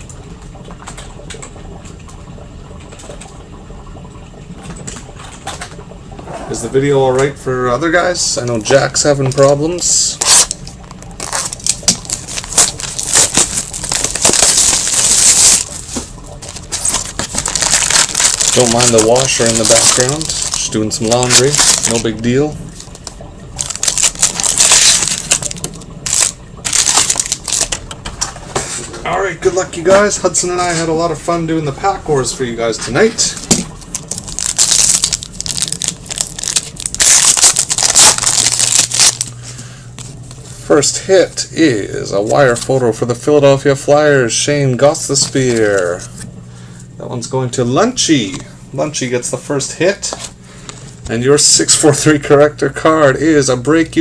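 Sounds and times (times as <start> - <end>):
plastic wrapping crinkling: 10.1 - 28.0, 33.4 - 40.4.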